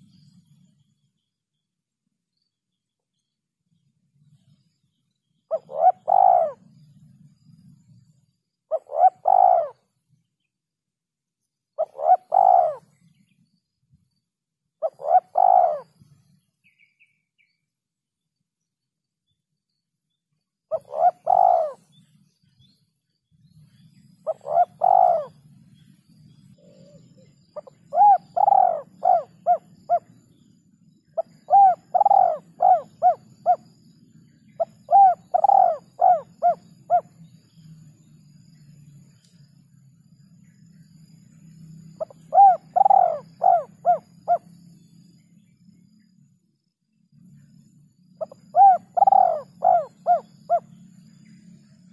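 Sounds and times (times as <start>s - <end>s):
faint low hum: 0.0s - 51.9s
dove cooing: 5.5s - 7.0s, 8.7s - 9.8s, 11.8s - 13.0s, 14.8s - 16.0s, 20.7s - 21.9s, 24.2s - 25.4s, 26.5s - 30.5s, 31.2s - 33.8s, 34.4s - 37.2s, 42.0s - 44.6s, 48.2s - 50.8s.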